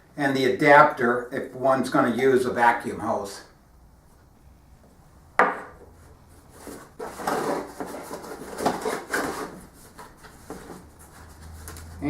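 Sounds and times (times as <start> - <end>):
cardboard scraping and rustling: 6.0 - 12.0.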